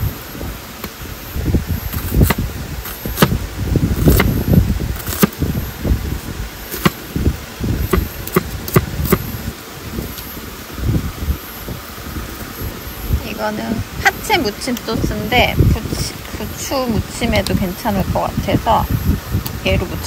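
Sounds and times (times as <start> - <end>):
wind on microphone: 0.0 - 20.0.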